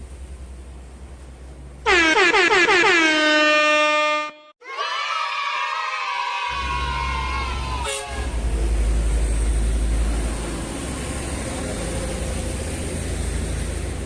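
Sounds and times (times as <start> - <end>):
heavy vehicle engine rumbling: 0.0 - 3.0, 6.5 - 14.0
multi-tone air horn: 1.9 - 4.6, 7.8 - 8.4.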